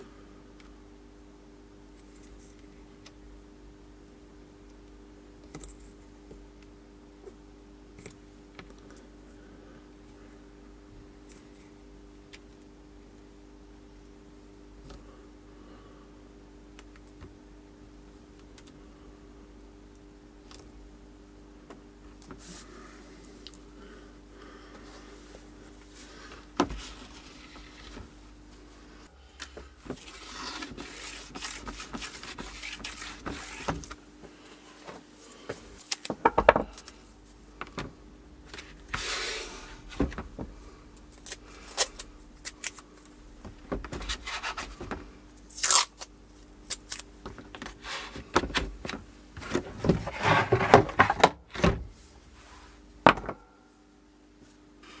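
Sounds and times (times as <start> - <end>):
faint steady hum: 0.0 - 55.0
scraping and tearing: 29.8 - 34.0, 45.5 - 46.1.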